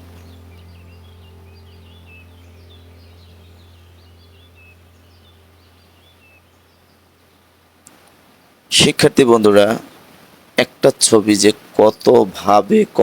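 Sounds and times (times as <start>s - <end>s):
low hum: 0.0s - 8.5s
small birds chirping: 0.0s - 8.7s, 9.4s - 10.4s.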